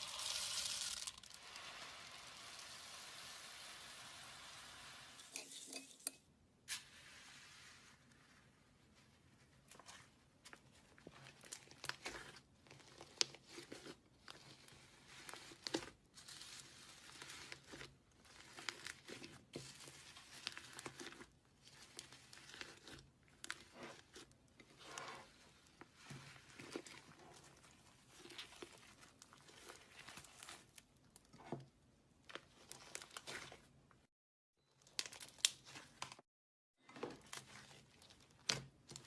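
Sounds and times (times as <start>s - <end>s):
crackling and popping of slime: 34.8s - 36.2s, 37.2s - 39.0s.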